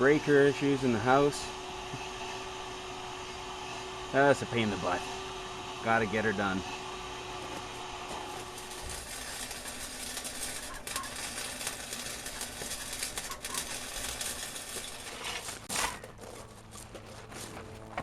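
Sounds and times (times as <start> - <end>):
welder arc crackling: 0.0 - 18.0.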